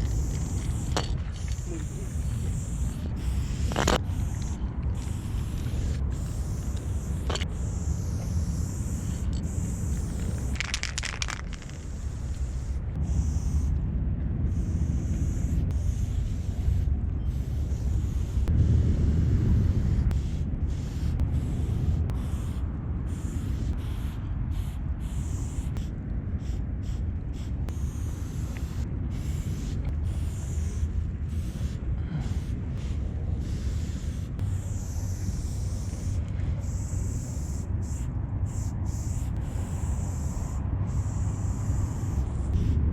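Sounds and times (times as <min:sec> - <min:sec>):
spray can hissing: 0:00.0 - 0:12.7, 0:32.8 - 0:42.6
wind rumble on microphone: 0:00.0 - 0:42.9
quick clicks: 0:09.2 - 0:12.0.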